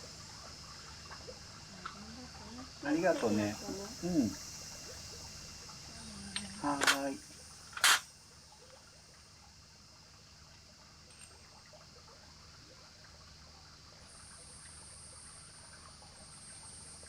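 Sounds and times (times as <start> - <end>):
thin high steady tone: 0.0 - 8.1
faint steady hiss: 0.0 - 17.0.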